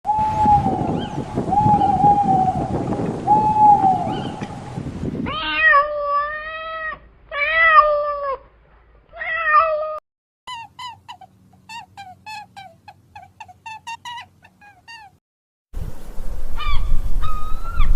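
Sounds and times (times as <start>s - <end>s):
long meow-like animal calls: 5.3s - 8.4s
falling animal calls: 10.5s - 15.2s.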